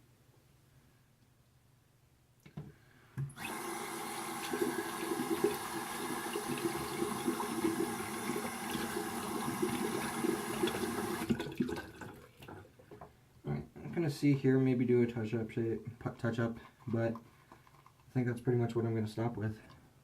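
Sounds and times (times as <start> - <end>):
tap water running into sink: 3.3 - 13.1.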